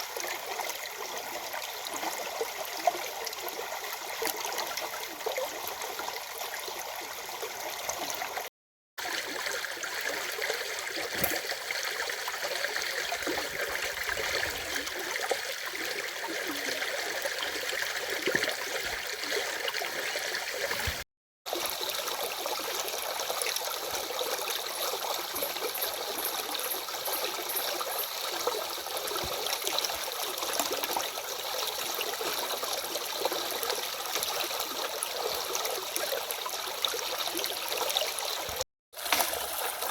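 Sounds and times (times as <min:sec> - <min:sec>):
stream water rushing: 0:36.8 - 0:39.9.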